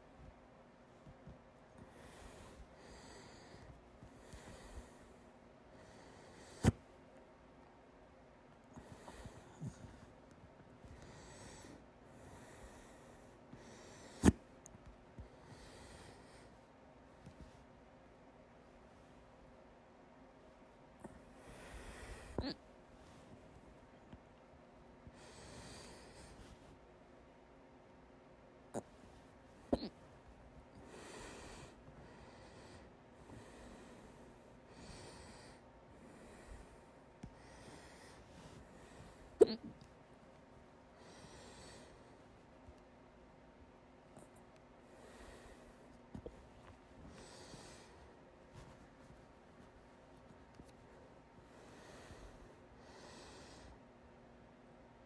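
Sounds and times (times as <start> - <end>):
soft breaths: 0.0 - 55.0
person hiccuping: 29.8 - 30.0, 39.4 - 39.7.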